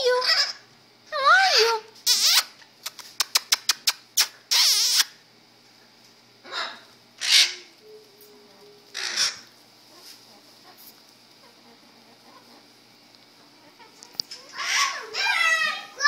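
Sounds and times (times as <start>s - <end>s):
parrot squawks: 1.4s - 2.6s, 4.2s - 5.2s, 6.4s - 7.7s, 8.9s - 9.5s, 14.4s - 16.0s
parrot chirps: 1.4s - 5.2s, 6.4s - 7.7s, 8.9s - 9.5s, 14.3s - 16.0s.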